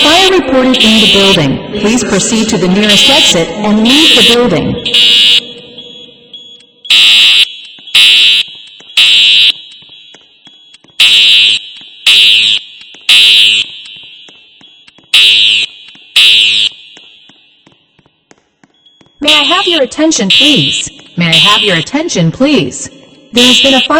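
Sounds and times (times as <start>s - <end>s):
voice message: 0.0s - 6.3s, 19.2s - 23.9s
fire alarm horn blasts: 0.0s - 18.0s, 18.8s - 23.9s.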